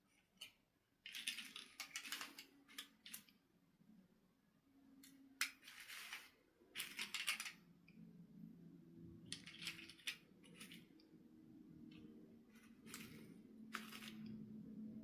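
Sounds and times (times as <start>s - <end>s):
faint low hum: 0.0s - 15.0s
handling rustles and clicks: 0.1s - 3.4s, 5.0s - 8.0s, 9.2s - 11.1s, 11.8s - 14.5s.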